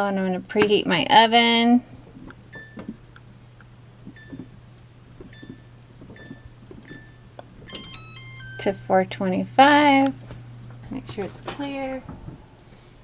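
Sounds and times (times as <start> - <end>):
oven control panel beeping: 2.5 - 3.0, 5.3 - 12.0.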